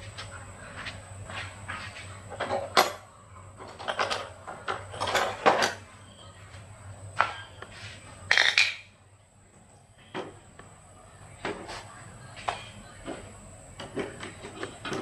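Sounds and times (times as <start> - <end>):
metal tools clinking: 3.7 - 5.8.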